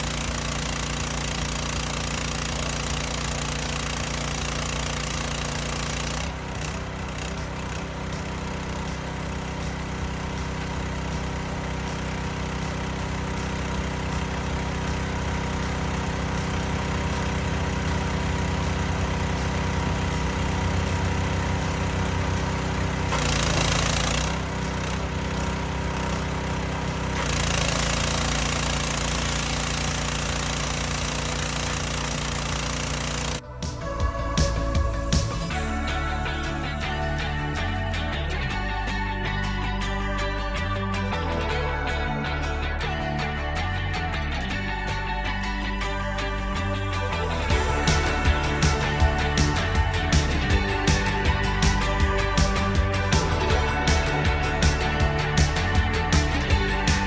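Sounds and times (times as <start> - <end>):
pressure washer engine droning: 0.0 - 40.4, 43.8 - 57.0.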